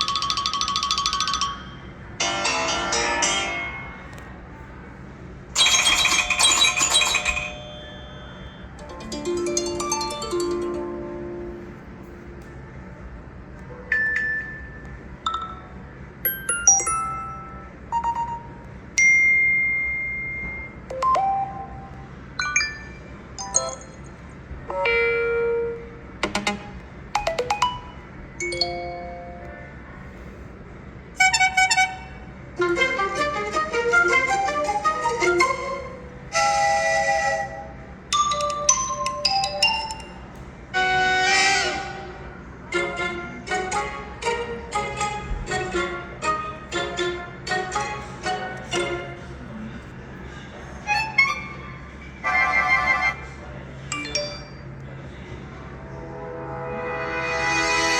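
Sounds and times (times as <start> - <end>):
phone ringtone melody: 0.0 - 3.5, 5.6 - 11.8, 15.3 - 19.3, 27.2 - 29.4.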